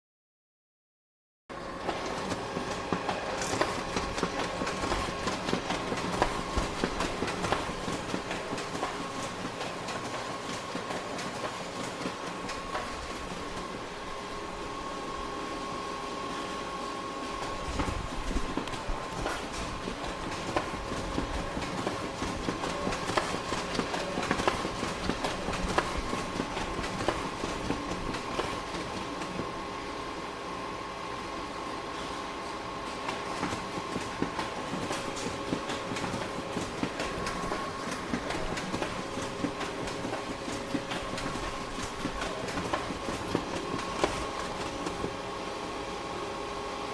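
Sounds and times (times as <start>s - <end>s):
photocopier whirring: 1.5s - 46.7s
photocopier clicks and clacks: 1.8s - 13.8s, 17.4s - 29.5s, 32.9s - 45.2s.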